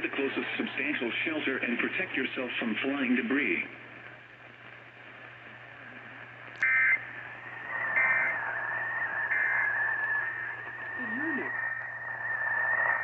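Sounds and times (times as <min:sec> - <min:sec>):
low electrical hum: 0:00.0 - 0:13.0
wavering high tone: 0:07.8 - 0:10.0.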